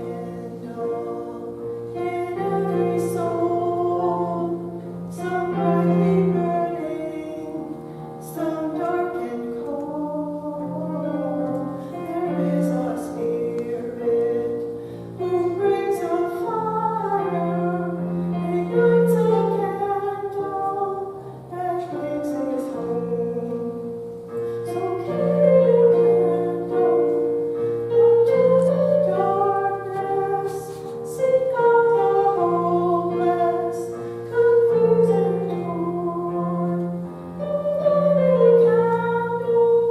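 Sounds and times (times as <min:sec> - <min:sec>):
woman singing slow song: 0:00.0 - 0:23.9.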